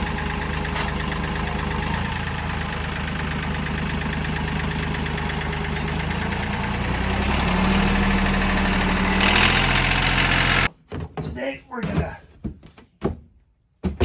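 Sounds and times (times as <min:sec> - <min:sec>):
chainsaw engine running fast: 0:00.0 - 0:10.7.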